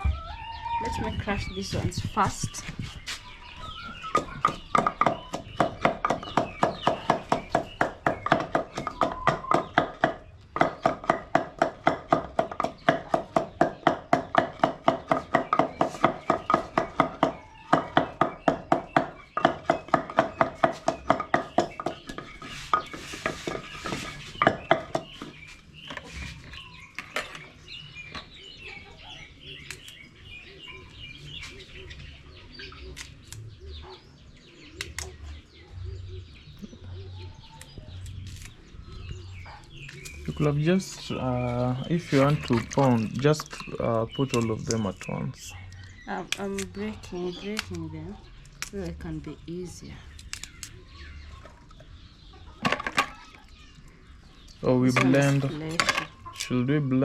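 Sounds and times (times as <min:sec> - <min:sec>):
pestle pounding in wooden mortar: 0:04.0 - 0:25.6.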